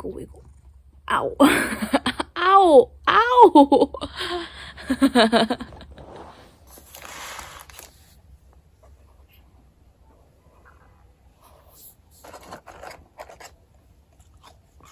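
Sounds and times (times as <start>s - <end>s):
rustling: 5.4s - 9.7s.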